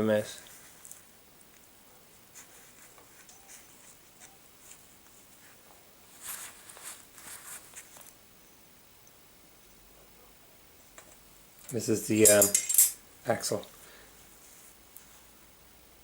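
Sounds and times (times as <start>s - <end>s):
small metal parts clicking and rattling: 11.6s - 13.0s.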